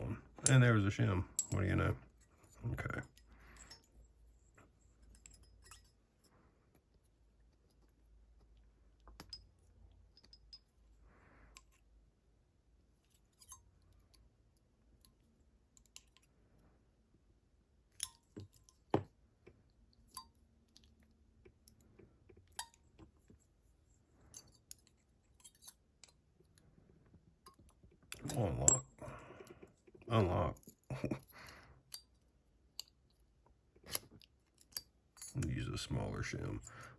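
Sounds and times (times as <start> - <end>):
metallic clicks of padlock parts: 5.0 - 6.0, 9.0 - 10.9, 13.1 - 16.3, 17.9 - 23.4, 24.3 - 26.6, 27.4 - 29.6, 30.6 - 33.2, 33.8 - 35.6.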